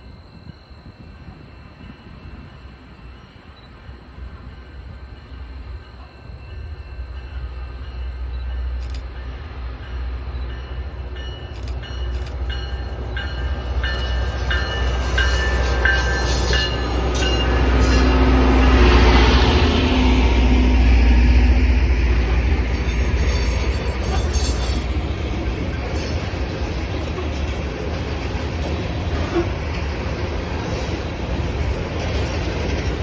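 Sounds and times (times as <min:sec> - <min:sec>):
train low rumble: 0:00.0 - 0:33.0
train wheel clicks: 0:07.1 - 0:19.8, 0:22.0 - 0:33.0
high metallic squealing: 0:22.7 - 0:26.4.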